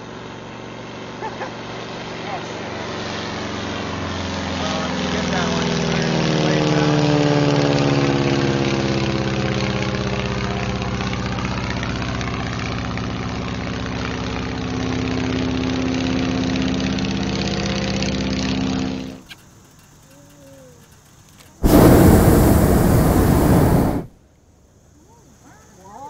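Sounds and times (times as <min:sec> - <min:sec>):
propeller airplane engine running: 0:09.9 - 0:20.1, 0:21.0 - 0:24.1.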